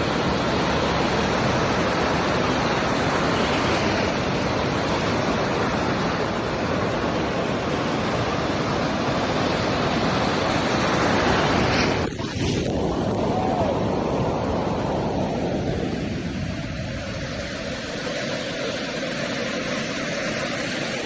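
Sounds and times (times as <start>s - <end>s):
ocean surf washing in: 0.0s - 21.0s
wind buffeting microphone: 4.0s - 18.3s.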